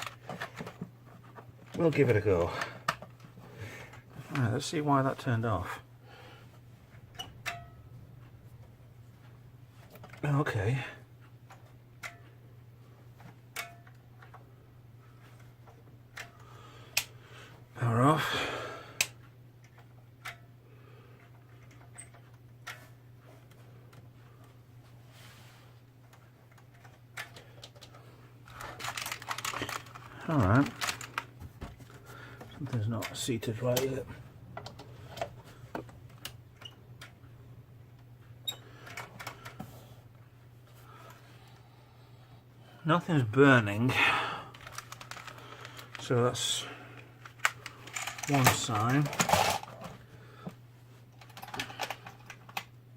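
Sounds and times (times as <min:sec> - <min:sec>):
steady low hum: 0:00.0 - 0:52.9
clicks of computer parts handled: 0:28.6 - 0:31.8
light clicks handling computer: 0:44.5 - 0:46.0.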